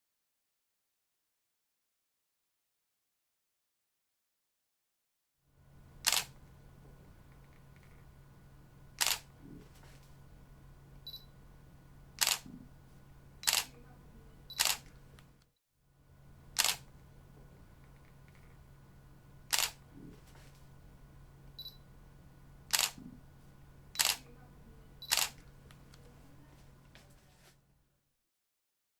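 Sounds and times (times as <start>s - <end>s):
low steady hum: 5.6s - 27.5s
camera shutter clicks: 6.0s - 6.4s, 9.0s - 10.1s, 12.2s - 12.5s, 13.4s - 13.8s, 14.5s - 15.3s, 16.6s - 16.9s, 19.5s - 19.8s, 22.7s - 23.0s, 24.0s - 24.3s, 25.0s - 25.8s
faint high beep: 11.0s - 11.3s, 21.6s - 21.8s.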